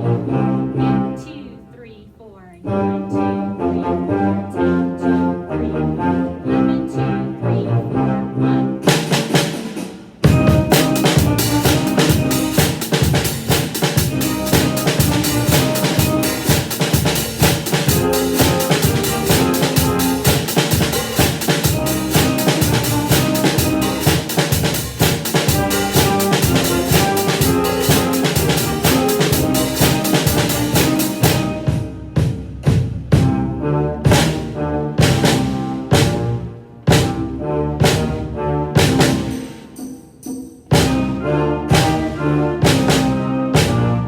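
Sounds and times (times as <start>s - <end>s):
band backing track with brass: 0.0s - 1.2s, 2.6s - 44.0s
drum set playing blues groove: 8.9s - 33.3s, 34.1s - 36.3s, 38.8s - 40.0s, 40.7s - 43.8s.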